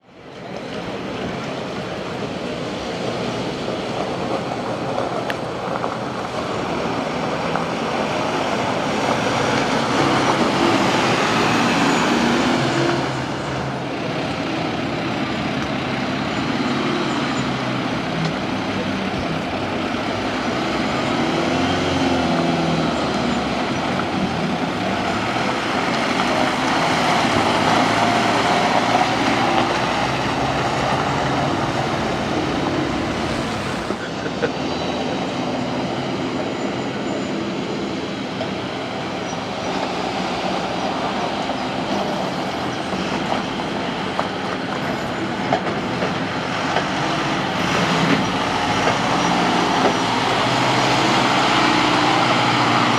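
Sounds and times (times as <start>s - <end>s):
truck diesel engine revving: 30.4s - 34.5s.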